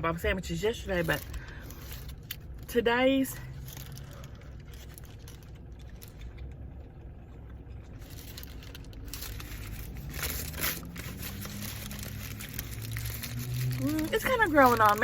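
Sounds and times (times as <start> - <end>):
low hum: 0.3 - 15.0
paper wrapper crinkling: 3.5 - 6.6, 7.8 - 15.0.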